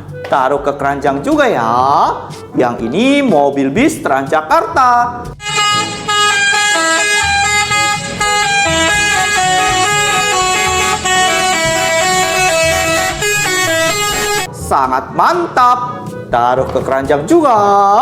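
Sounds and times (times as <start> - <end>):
musical bus horn melody: 5.4 - 14.5.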